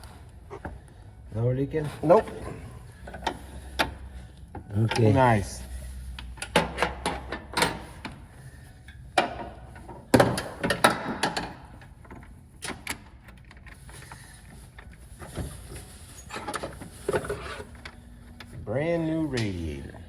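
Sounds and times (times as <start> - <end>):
tools and parts clicking and knocking: 6.2 - 8.2, 9.2 - 13.8.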